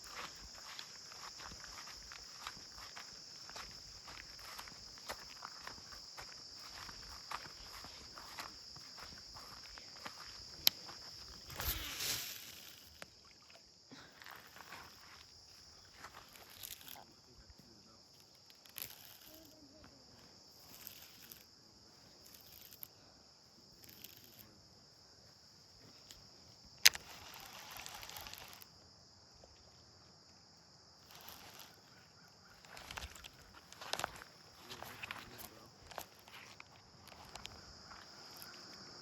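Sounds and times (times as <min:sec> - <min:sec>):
high insect drone: 0:00.0 - 0:39.0
short hiss: 0:11.5 - 0:13.0.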